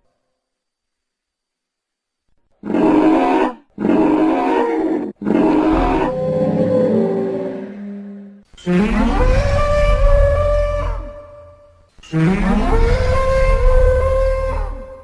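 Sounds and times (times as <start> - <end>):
deep dinosaur calls: 2.6 - 15.0.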